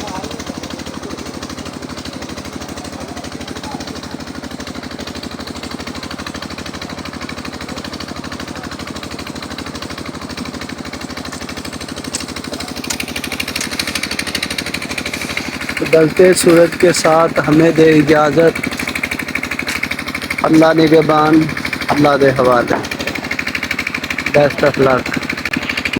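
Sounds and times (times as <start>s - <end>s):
engine throbbing steadily: 0.0s - 25.9s
sharp clicks: 11.2s - 25.8s.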